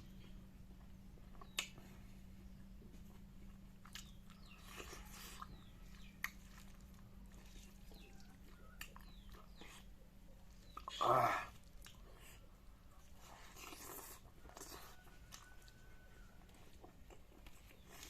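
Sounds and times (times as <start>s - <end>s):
soft chewing: 0.0s - 18.0s
steady low hum: 0.0s - 18.0s
mouth clicks and smacks: 1.3s - 1.8s.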